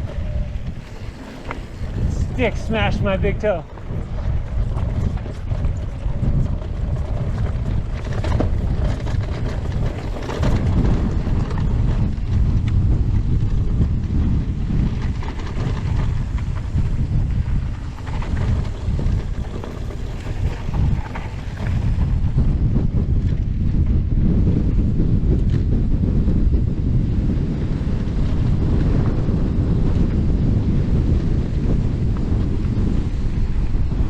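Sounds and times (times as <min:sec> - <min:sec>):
bike knocking and rattling over rocks: 0:00.0 - 0:26.2
wind buffeting microphone: 0:00.0 - 0:34.0.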